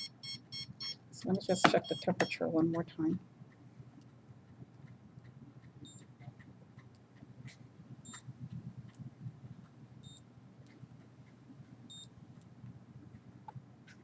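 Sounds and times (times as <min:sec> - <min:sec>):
thermometer short high beeps: 0:00.0 - 0:02.4
low background hum: 0:00.0 - 0:14.0.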